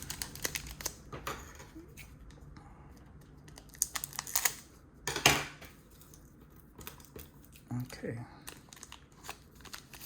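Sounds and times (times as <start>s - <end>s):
wrapper crinkling: 0.0s - 1.0s, 3.5s - 4.6s, 8.4s - 10.0s.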